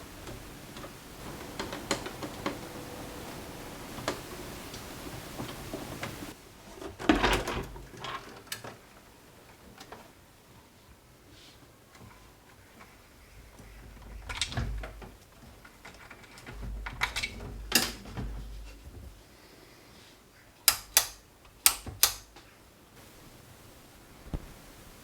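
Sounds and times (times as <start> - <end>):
sharp clicks: 20.7 - 22.4.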